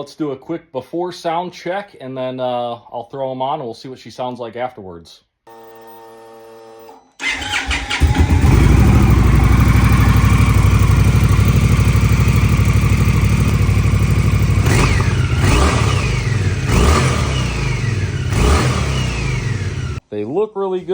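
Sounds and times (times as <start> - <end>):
motorcycle engine starting and idling: 7.2 - 20.0.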